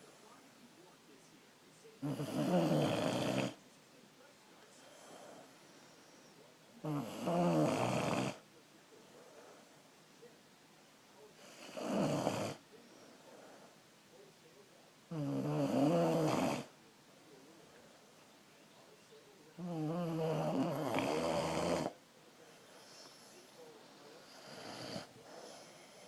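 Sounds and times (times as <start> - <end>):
person snoring: 2.0 - 3.6, 6.8 - 8.4, 11.4 - 12.6, 15.1 - 16.7, 19.6 - 21.9
breathing: 4.7 - 6.4, 9.1 - 9.8, 12.8 - 13.8, 22.4 - 26.0.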